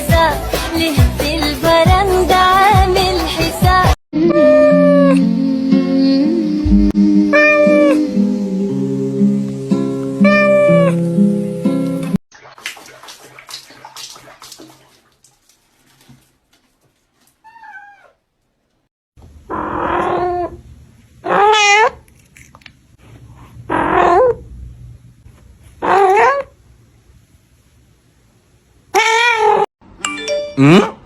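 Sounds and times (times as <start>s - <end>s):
cat meowing: 17.5s - 18.2s, 21.3s - 22.0s, 29.0s - 29.7s.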